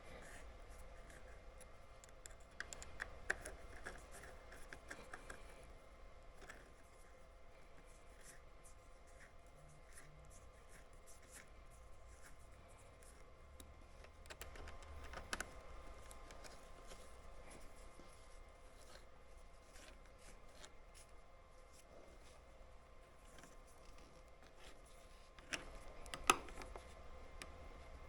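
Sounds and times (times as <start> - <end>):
faint steady hum: 0.0 - 28.0.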